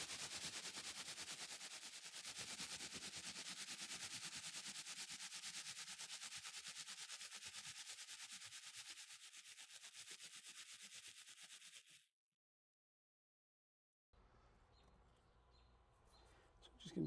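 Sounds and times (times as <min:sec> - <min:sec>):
rubbing on window glass: 0:00.0 - 0:12.1.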